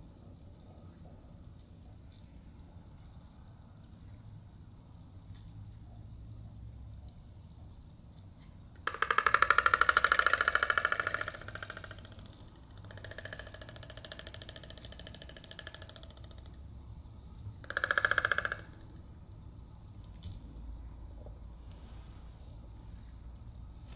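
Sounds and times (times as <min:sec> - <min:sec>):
storks bill-clattering: 0:08.9 - 0:16.6, 0:17.7 - 0:18.8.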